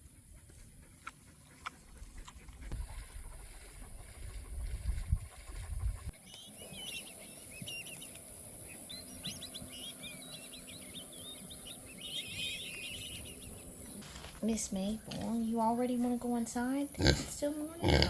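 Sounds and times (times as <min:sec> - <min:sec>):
wind on microphone: 0:02.4 - 0:06.2
small birds chirping: 0:05.5 - 0:17.6.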